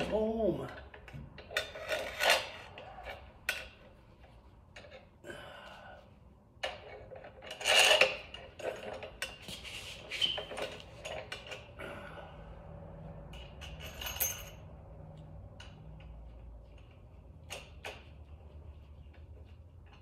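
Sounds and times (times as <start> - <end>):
metal tools clinking and scraping: 0.6 - 3.9, 6.6 - 11.8, 13.3 - 14.8.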